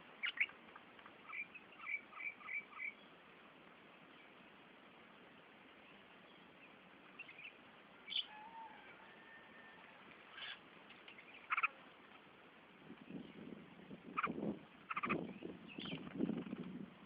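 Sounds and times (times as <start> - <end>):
faint steady hiss: 0.0 - 17.0
small birds chirping: 0.1 - 3.3, 5.2 - 8.5, 10.1 - 16.8.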